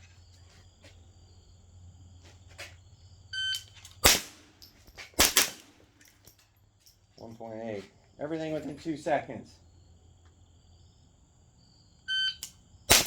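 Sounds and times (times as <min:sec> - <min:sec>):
crickets chirping: 0:00.0 - 0:13.0
rifle shots: 0:04.0 - 0:04.6, 0:05.2 - 0:05.9.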